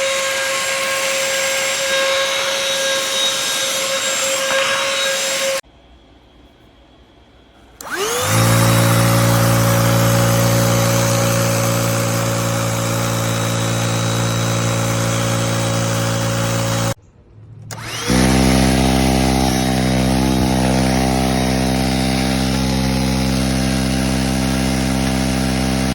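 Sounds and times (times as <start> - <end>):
vacuum motor spinning up: 7.8 - 17.0, 17.7 - 25.9
vacuum motor whining: 7.8 - 17.0, 17.7 - 25.9.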